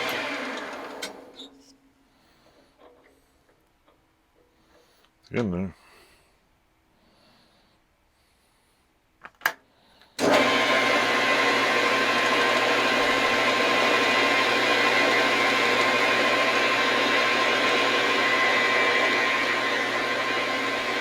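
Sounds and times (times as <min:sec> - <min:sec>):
metal lathe humming and whining: 0:00.0 - 0:01.4, 0:10.2 - 0:21.0.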